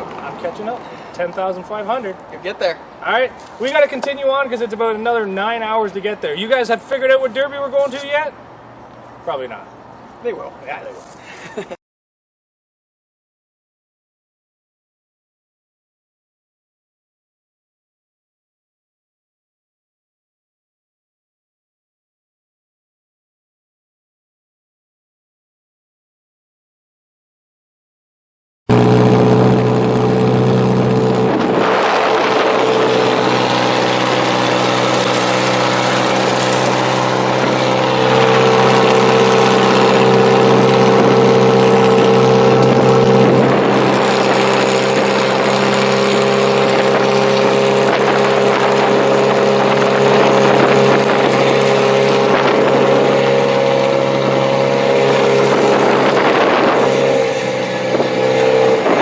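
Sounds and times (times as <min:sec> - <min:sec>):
engines running at high revs: 0:28.7 - 0:59.0.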